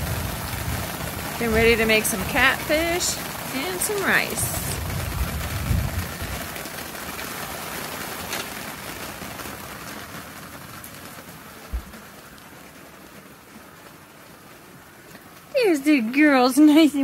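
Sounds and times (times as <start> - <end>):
thunderstorm rain falling: 0.0 - 17.0
low thump: 11.7 - 12.0.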